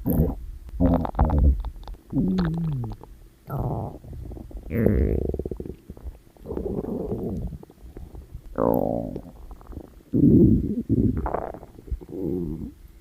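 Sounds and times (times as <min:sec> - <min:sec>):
stomach growling: 0:00.0 - 0:12.8.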